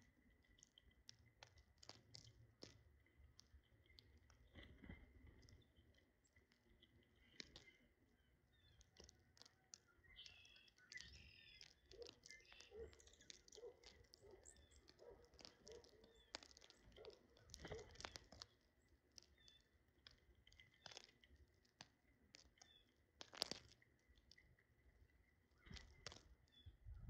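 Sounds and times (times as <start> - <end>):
birds pecking at food: 0.0 - 26.8
loud crackle: 8.7 - 24.4.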